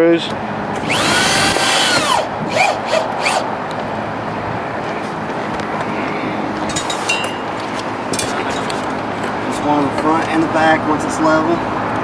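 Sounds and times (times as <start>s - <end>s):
loud background noise: 0.0s - 12.0s
power drill motor whining: 0.8s - 3.5s.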